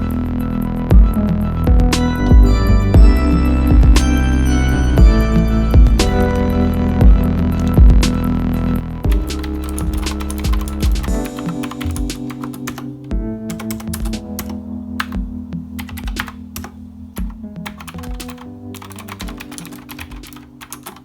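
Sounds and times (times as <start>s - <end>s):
background music: 0.0s - 21.0s
mechanical keyboard clicks: 15.8s - 21.0s.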